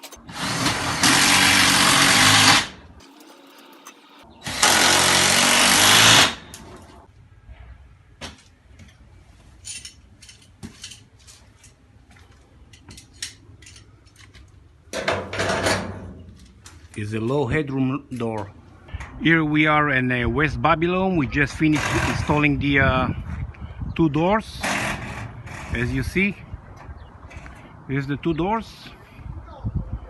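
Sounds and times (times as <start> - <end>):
power drill running: 4.4 - 6.4.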